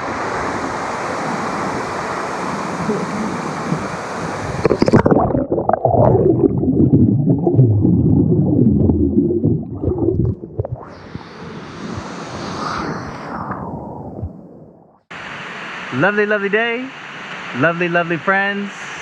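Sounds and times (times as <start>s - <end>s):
rushing water hiss: 0.0s - 5.0s, 15.1s - 19.0s
underwater churning water rumble: 0.0s - 15.0s.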